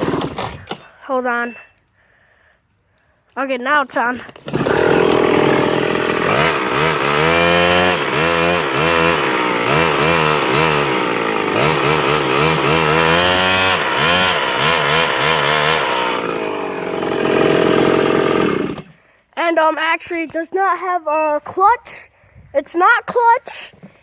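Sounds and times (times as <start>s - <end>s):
small engine revving: 4.4s - 19.0s.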